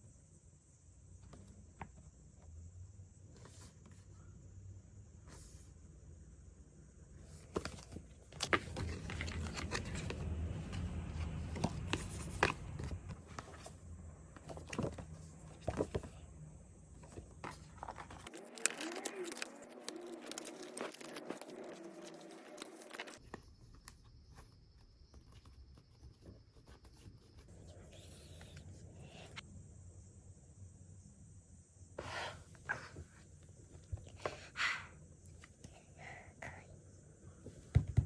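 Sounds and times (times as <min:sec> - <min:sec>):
packaging crinkling and rustling: 0:17.1 - 0:23.2.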